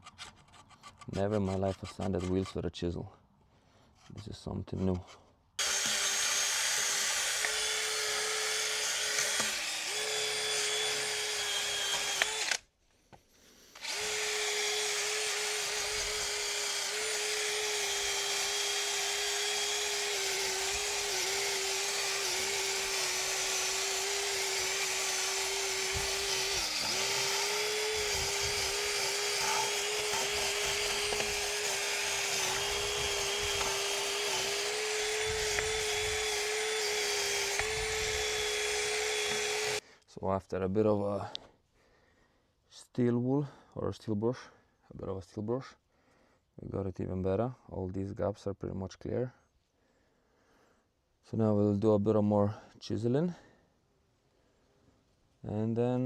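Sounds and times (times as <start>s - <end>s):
drill wire brush scouring metal: 5.6s - 12.6s, 13.7s - 39.8s.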